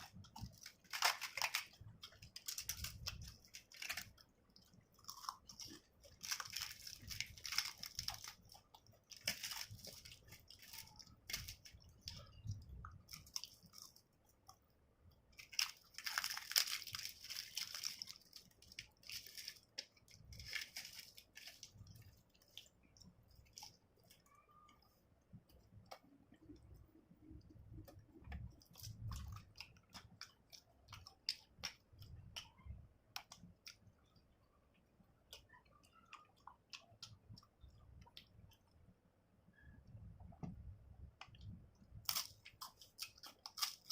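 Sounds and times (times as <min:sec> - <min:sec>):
crunching: 0:00.0 - 0:14.6, 0:15.4 - 0:24.3, 0:41.9 - 0:43.9
person chewing food: 0:00.0 - 0:38.8, 0:41.2 - 0:43.9.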